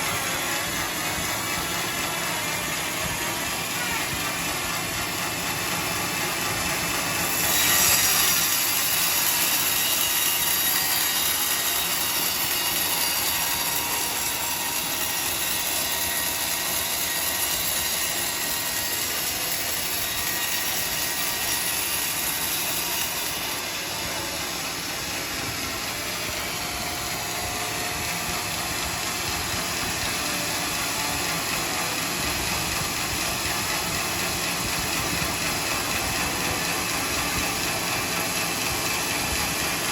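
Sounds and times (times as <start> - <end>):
band saw cutting a log: 0.0 - 39.9.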